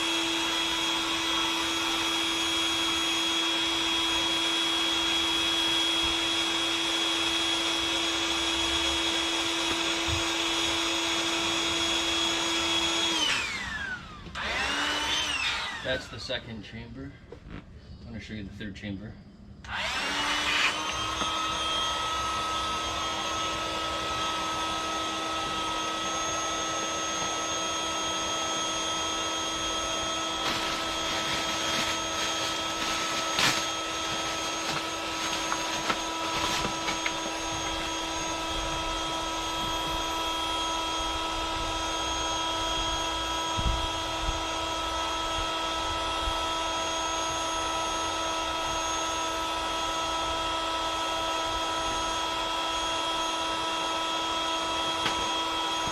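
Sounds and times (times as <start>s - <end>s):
electric air pump humming: 0.0s - 16.3s, 19.6s - 55.9s.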